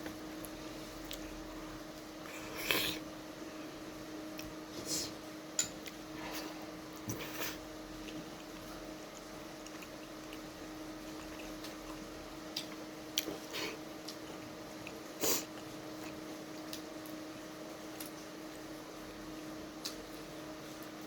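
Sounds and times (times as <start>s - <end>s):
low steady hum: 0.0s - 21.0s
wet chewing and smacking: 7.0s - 18.6s.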